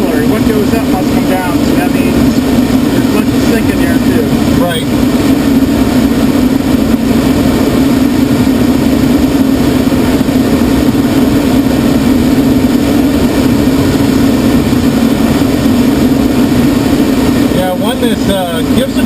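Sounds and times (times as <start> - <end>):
glider cockpit drone: 0.0 - 19.0.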